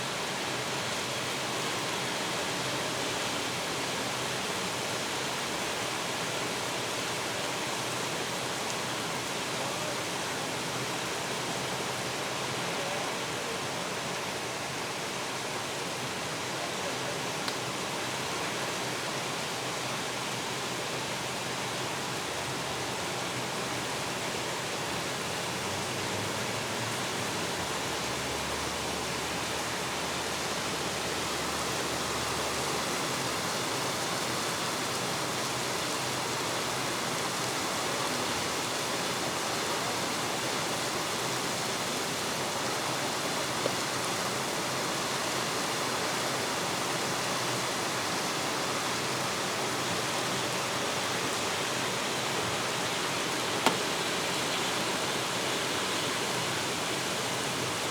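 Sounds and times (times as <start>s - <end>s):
heavy rain falling: 15.1s - 57.9s.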